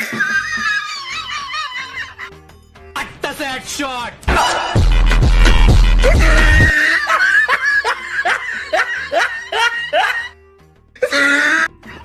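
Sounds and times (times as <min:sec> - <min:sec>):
snickering laughter: 0:00.0 - 0:02.3, 0:06.0 - 0:10.3
loud music with heavy bass beat: 0:04.3 - 0:06.7.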